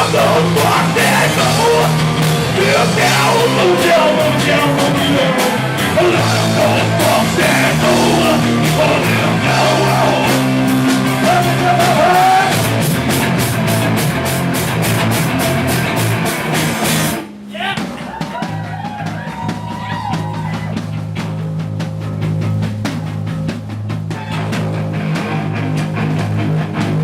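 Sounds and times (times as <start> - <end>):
sung vocals: 0.0 - 12.7
live punk rock band: 0.0 - 27.0.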